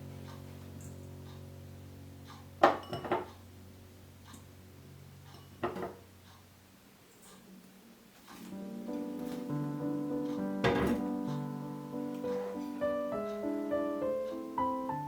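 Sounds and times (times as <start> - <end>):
kitchenware clattering: 2.6 - 3.4, 5.3 - 6.1, 10.6 - 11.4.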